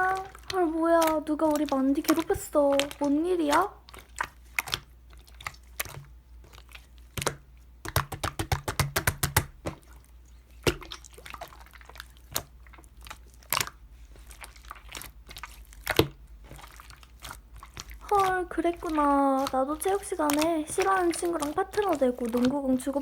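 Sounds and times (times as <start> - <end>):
slime clicking and popping: 6.6 - 9.8, 12.2 - 23.0.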